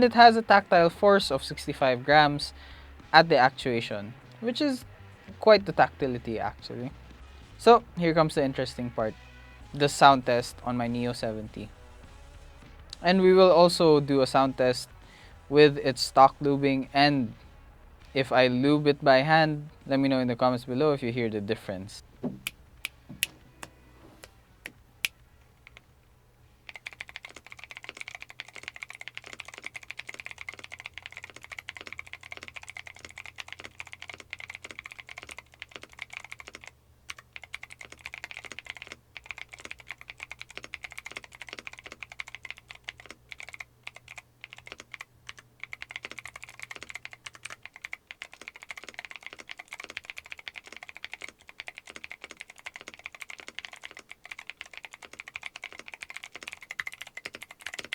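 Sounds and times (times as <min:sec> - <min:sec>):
clicky mechanical keyboard typing: 0:26.7 - 0:57.9.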